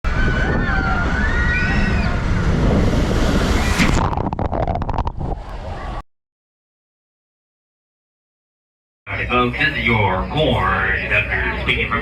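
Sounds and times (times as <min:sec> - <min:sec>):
loud rumbling noise: 0:00.0 - 0:06.0
faint wavering squeals: 0:00.1 - 0:02.5
wind buffeting microphone: 0:00.1 - 0:06.0.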